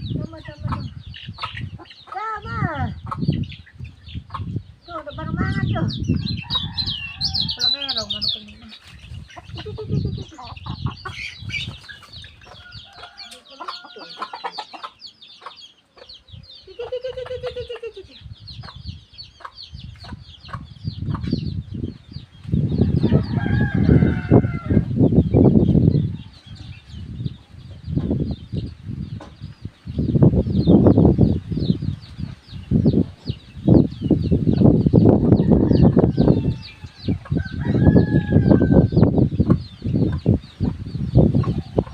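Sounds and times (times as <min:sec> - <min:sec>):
bird singing high chirps: 0:00.0 - 0:41.9
chickens clucking: 0:00.0 - 0:41.9.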